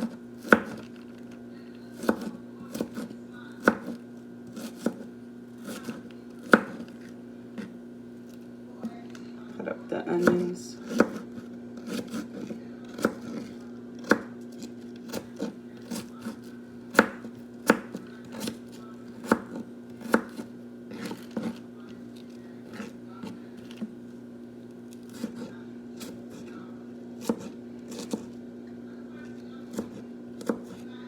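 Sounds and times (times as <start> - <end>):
knife chopping on cutting board: 0.0 - 0.9, 1.9 - 7.0, 10.2 - 21.6, 25.0 - 26.6, 27.2 - 28.4, 29.6 - 30.9
steady low hum: 0.0 - 31.0.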